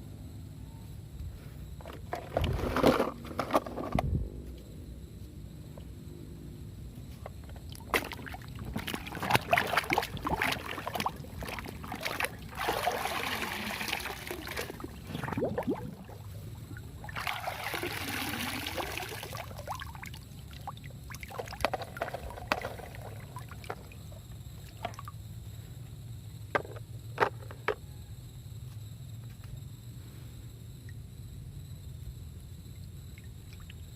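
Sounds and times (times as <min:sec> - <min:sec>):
water splashing and pouring: 0:07.8 - 0:16.4, 0:17.0 - 0:24.0
plastic clicks and knocks: 0:26.6 - 0:27.8.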